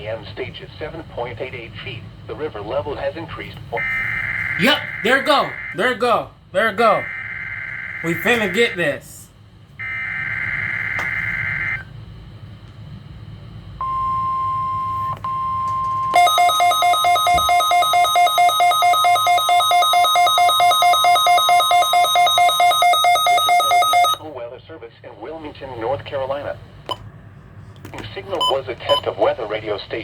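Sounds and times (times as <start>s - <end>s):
steady warning alarm tone: 3.8s - 9.0s, 9.8s - 12.0s, 13.8s - 24.3s
radio receiver beeping: 13.8s - 24.3s, 28.0s - 29.2s.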